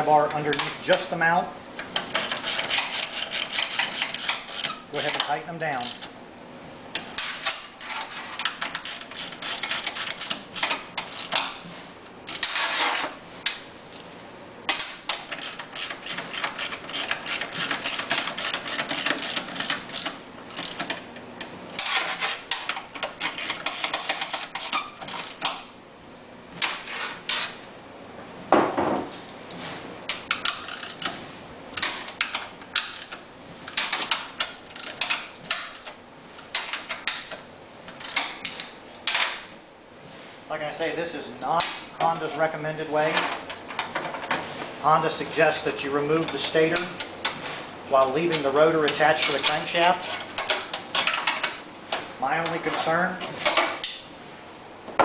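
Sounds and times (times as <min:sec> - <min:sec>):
ratchet wrench clicking: 0:02.1 - 0:05.2, 0:05.8 - 0:06.1, 0:08.6 - 0:11.5, 0:15.1 - 0:21.0, 0:22.7 - 0:25.6.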